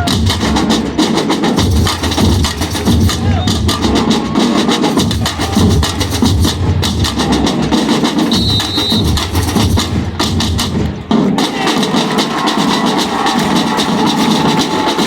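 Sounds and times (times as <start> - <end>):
rapid high drum strokes: 0.0 - 15.0
deep bass drums: 1.6 - 4.2, 5.0 - 10.8.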